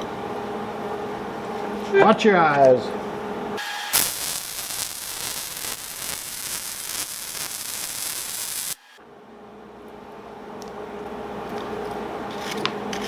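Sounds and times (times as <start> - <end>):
welding arc crackling: 3.6 - 9.0.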